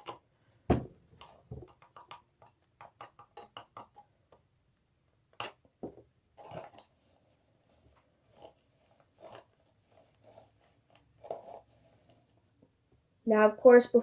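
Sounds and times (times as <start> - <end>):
kitchen items knocking on a table: 0.7 - 1.7.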